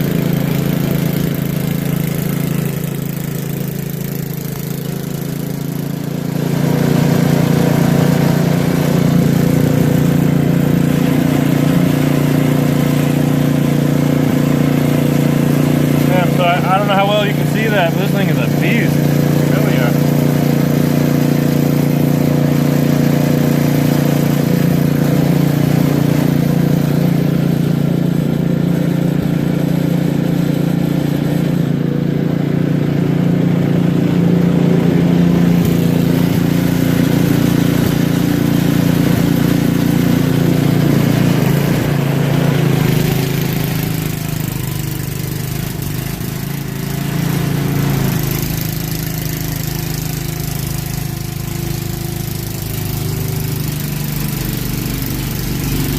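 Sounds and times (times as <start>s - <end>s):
snowblower engine running: 0.0s - 55.9s.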